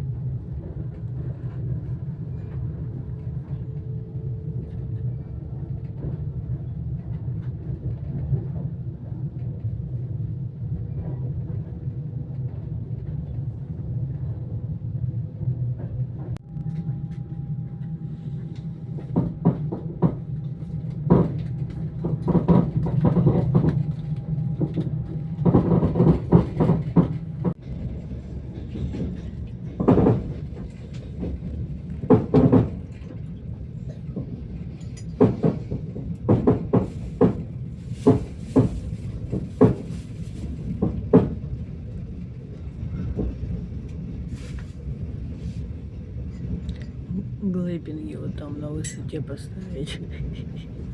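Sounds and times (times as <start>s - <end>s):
train rumbling on rails: 0.0s - 50.9s
wheels knocking and rattling: 21.0s - 42.0s.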